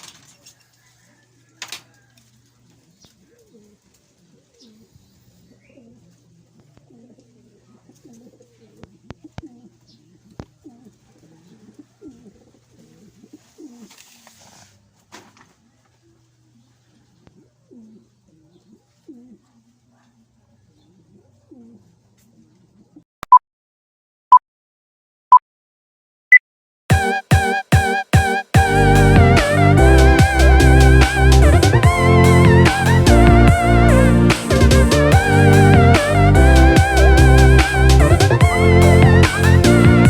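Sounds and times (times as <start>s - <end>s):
pigeons cooing: 0.5s - 14.1s, 15.6s - 23.0s.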